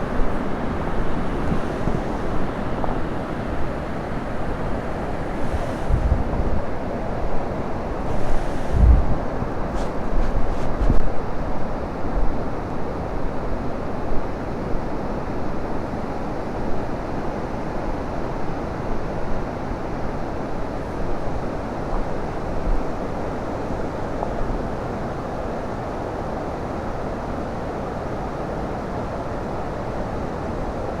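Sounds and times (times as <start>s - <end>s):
wind rushing over microphone: 0.0s - 12.3s.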